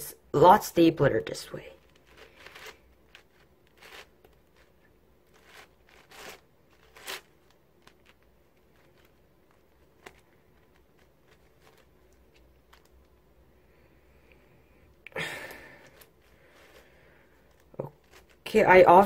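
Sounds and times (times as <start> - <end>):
puzzle cube clicks and scrapes: 1.7 - 13.2.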